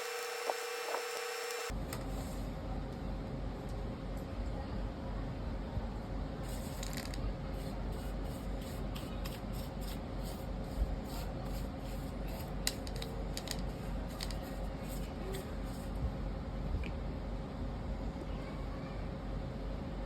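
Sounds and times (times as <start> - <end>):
screwdriver clicks and scrapes: 0.0 - 1.7
steady low hum: 0.0 - 18.3.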